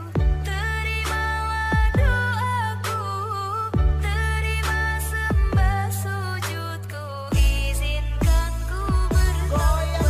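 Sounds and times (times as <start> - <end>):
deep bass hits dropping in pitch: 7.4 - 10.0.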